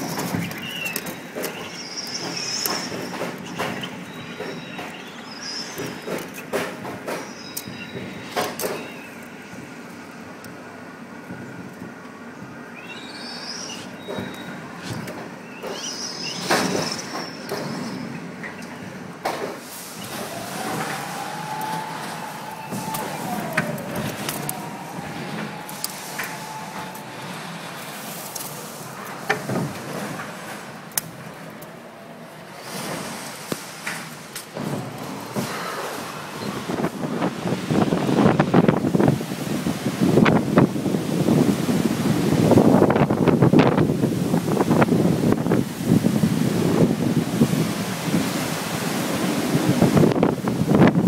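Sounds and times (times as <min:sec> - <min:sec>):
wind and rain rushing: 0:00.0 - 0:51.0
short rising whistles: 0:01.6 - 0:06.2, 0:12.8 - 0:14.7, 0:15.4 - 0:18.1, 0:19.9 - 0:28.3.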